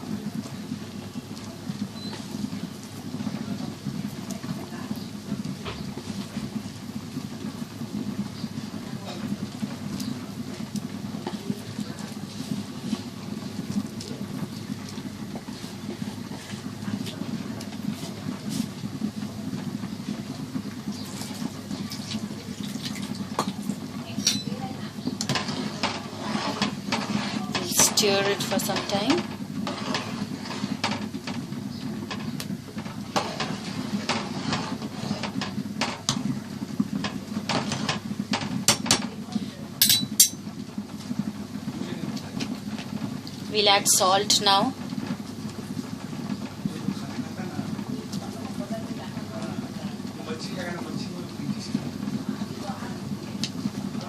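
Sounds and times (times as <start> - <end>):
porridge pot boiling: 0.0 - 54.0
spoon scraping a pot: 25.2 - 31.0, 33.1 - 36.0
spoon clinking on pot: 39.8 - 40.4.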